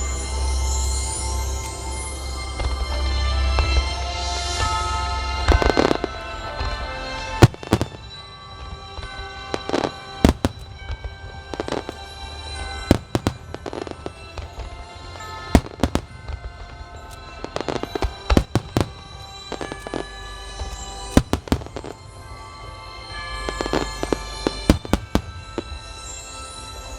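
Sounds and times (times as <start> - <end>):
fireworks bursting: 0.6 - 26.9
music over loudspeakers: 1.6 - 11.0, 12.9 - 20.0.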